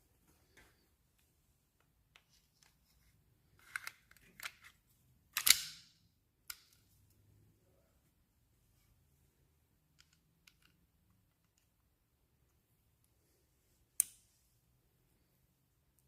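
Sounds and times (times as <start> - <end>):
sharp pistol snap: 5.4 - 5.9.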